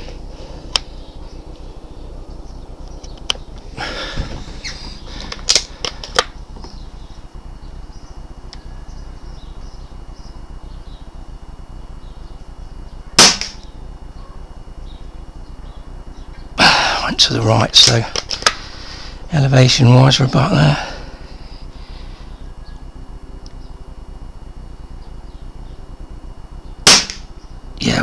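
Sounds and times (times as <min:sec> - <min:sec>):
air rifle handling clicks: 0:05.2 - 0:06.8, 0:17.8 - 0:18.6
air rifle shot: 0:13.2 - 0:13.7, 0:26.8 - 0:27.3.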